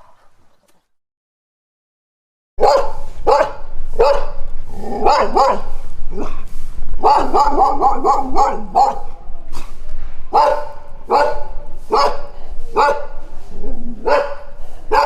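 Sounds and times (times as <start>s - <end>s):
dog barking: 0.0s - 0.7s, 2.6s - 6.4s, 7.0s - 13.2s, 14.0s - 15.0s.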